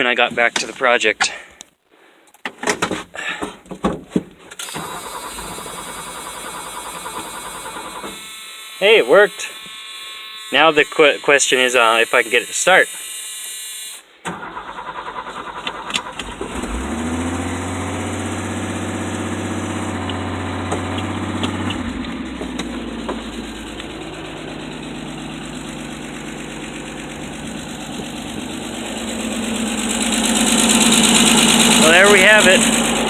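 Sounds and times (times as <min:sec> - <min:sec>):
truck engine cranking and idling: 0:03.2 - 0:08.3, 0:14.2 - 0:33.0.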